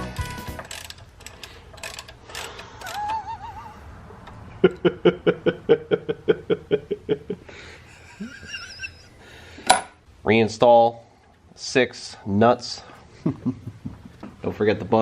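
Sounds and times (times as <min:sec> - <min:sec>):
person laughing: 0:02.8 - 0:09.2, 0:13.1 - 0:14.4.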